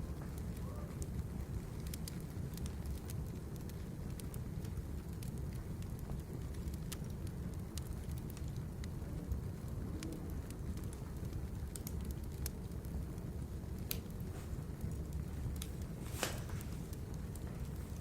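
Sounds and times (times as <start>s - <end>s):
firewood crackling and popping: 0.0s - 18.0s
low rumble of fire: 0.0s - 18.0s.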